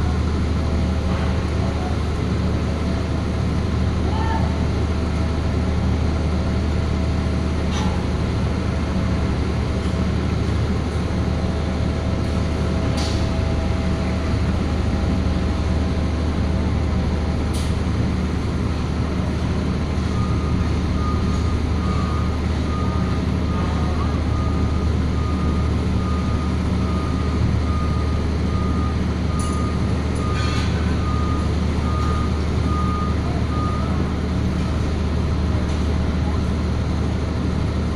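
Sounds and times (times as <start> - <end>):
large engine humming: 0.0 - 37.9.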